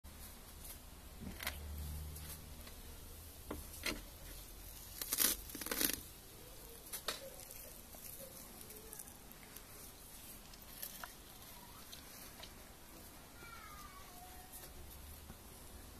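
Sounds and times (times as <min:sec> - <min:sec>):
dog tearing grass: 0:04.4 - 0:06.2.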